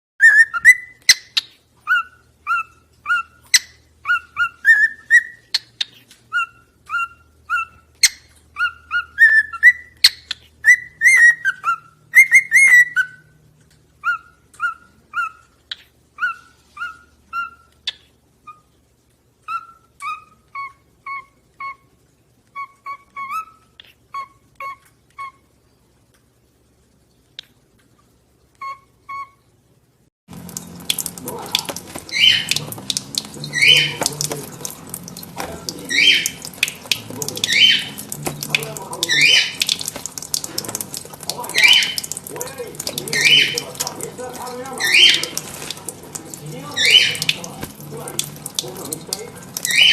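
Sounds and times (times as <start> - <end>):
lovebirds chirping: 0.2 - 25.9, 28.4 - 29.6, 30.4 - 49.9.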